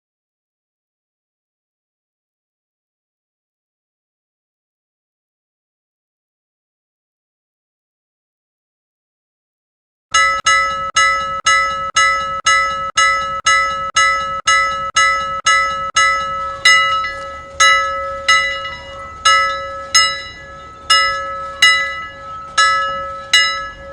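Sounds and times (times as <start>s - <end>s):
timer alarm bell ringing: 10.2s - 23.9s.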